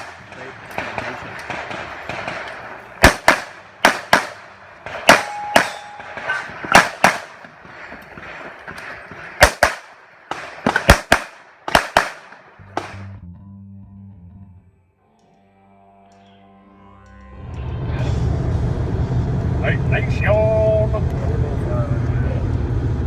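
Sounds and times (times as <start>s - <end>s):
handgun shots: 0.0s - 7.5s, 9.4s - 13.1s.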